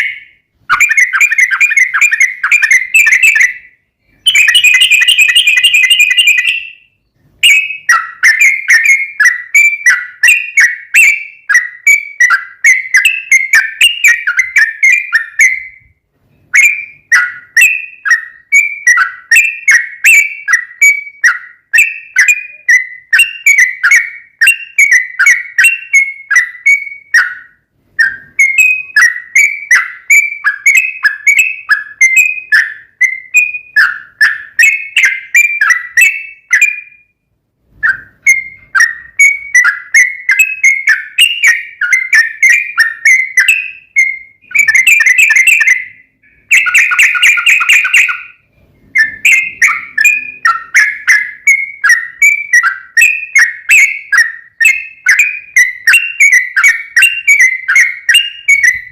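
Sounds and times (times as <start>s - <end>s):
bird singing chirping notes: 0.0s - 37.2s, 37.8s - 58.9s
bird harsh chatter: 49.0s - 58.9s.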